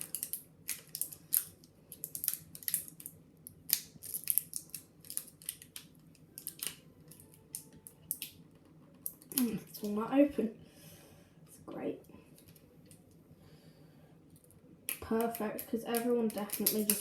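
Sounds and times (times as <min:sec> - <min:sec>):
plastic crackling and clicking: 0:00.0 - 0:10.0, 0:14.4 - 0:17.0.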